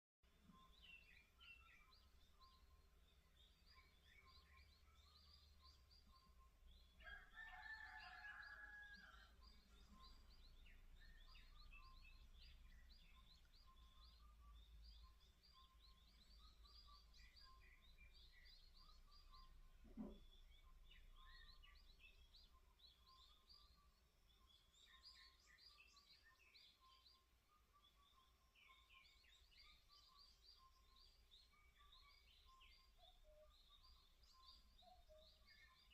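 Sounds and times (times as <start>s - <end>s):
songbirds chirping: 0.2s - 35.9s
rooster crowing: 7.0s - 9.4s
soft knock: 19.8s - 20.2s.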